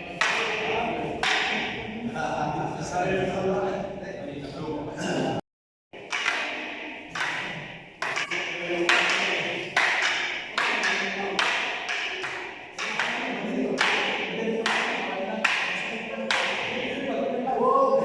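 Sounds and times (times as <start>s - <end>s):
sharp strikes echoing: 0.0s - 2.0s, 6.0s - 17.4s.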